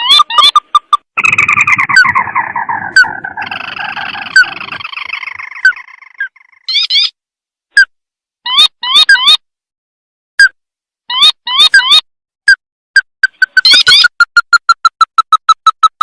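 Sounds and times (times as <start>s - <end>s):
sharp rising chirps: 0.1s - 6.4s.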